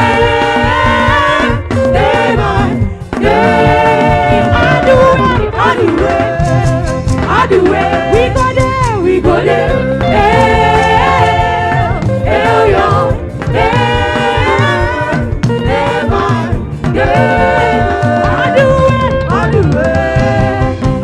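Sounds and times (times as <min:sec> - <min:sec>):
full band with steady beat: 0:00.0 - 0:21.0
singers singing gospel: 0:00.0 - 0:21.0.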